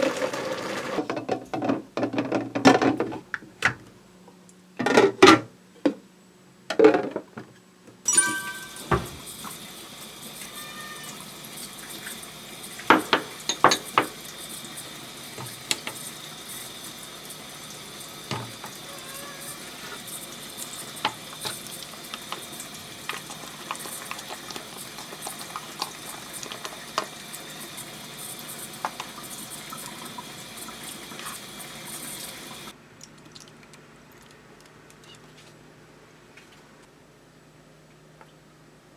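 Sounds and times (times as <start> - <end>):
utensils clinking on cookware: 8.1 - 9.3, 12.9 - 14.1
food sizzling in a pan: 8.1 - 32.7.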